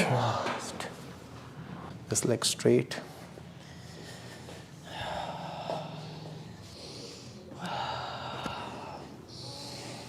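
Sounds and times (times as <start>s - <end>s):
person breathing deeply: 3.5s - 10.0s.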